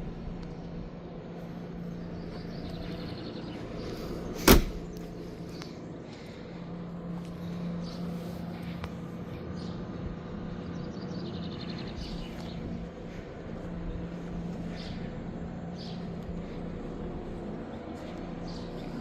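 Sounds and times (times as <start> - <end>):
birds chirping: 0.0 - 19.0
car engine humming: 0.0 - 19.0.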